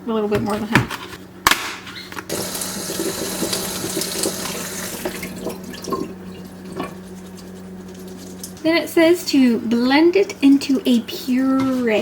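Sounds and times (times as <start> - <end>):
tap running into sink: 2.3 - 6.1.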